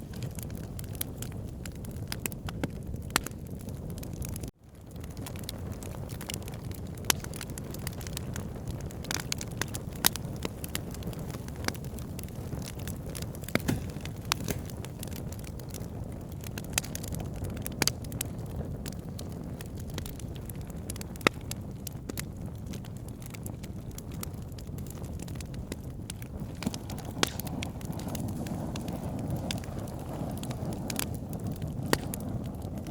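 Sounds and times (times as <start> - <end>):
campfire crackling: 0.0 - 32.9.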